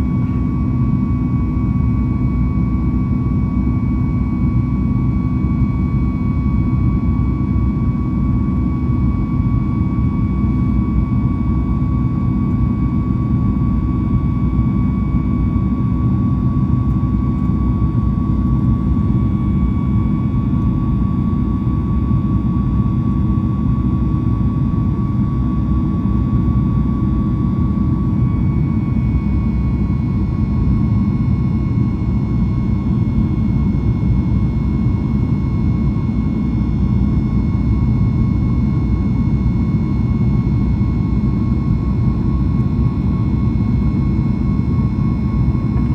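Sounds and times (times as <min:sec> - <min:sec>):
jet engine low rumble: 0:00.0 - 0:45.9
jet fan high whine: 0:00.0 - 0:45.9.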